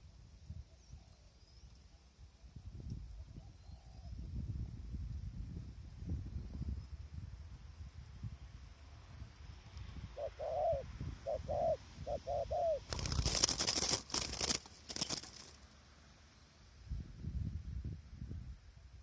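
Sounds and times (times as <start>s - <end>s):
dove cooing: 10.2s - 15.5s
loud rustling: 12.9s - 15.7s.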